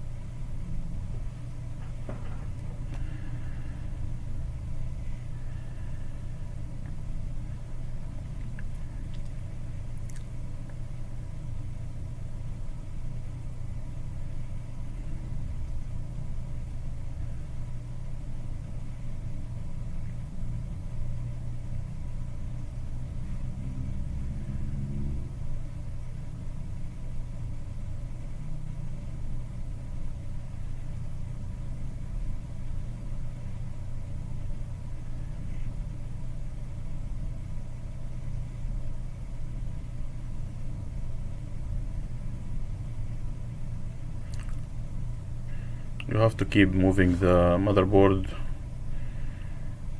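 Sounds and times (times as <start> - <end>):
machine humming: 0.0 - 10.2, 40.9 - 49.9.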